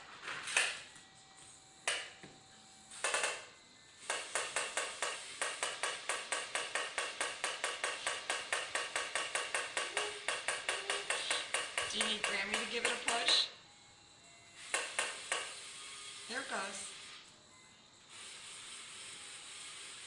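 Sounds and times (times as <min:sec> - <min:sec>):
toy train mechanical clicks: 0:03.0 - 0:13.5, 0:14.6 - 0:15.7.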